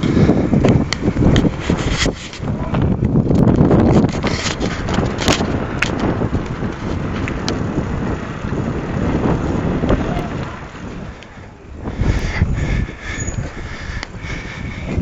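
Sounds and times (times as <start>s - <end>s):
sharp clicks and rattles: 0.0s - 8.6s
wind buffeting microphone: 0.0s - 15.0s.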